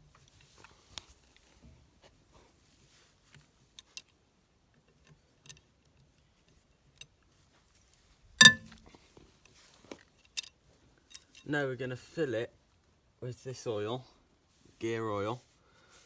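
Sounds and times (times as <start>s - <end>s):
metal tools clicking: 8.4s - 8.8s
metallic clank with ring: 8.4s - 8.8s.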